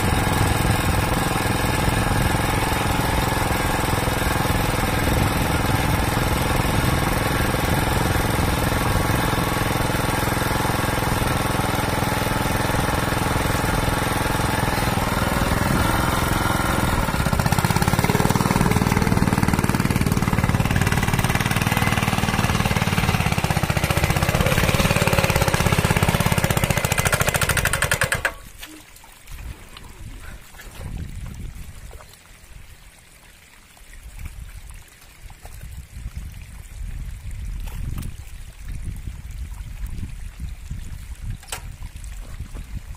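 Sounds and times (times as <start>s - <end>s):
diesel engine labouring: 0.0s - 28.4s
water trickling and splashing: 0.0s - 42.9s.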